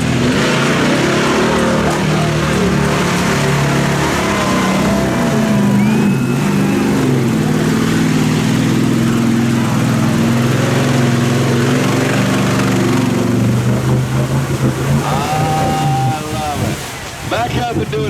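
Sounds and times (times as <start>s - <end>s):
engine running at high revs: 0.0s - 17.2s.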